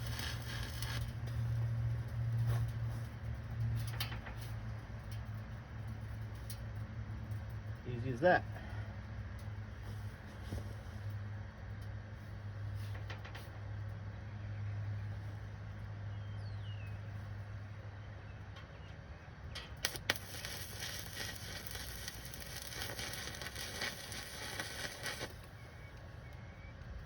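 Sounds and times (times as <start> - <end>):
welding arc crackling and sizzling: 0.0 - 8.2, 19.6 - 26.4
low steady hum: 0.0 - 27.0.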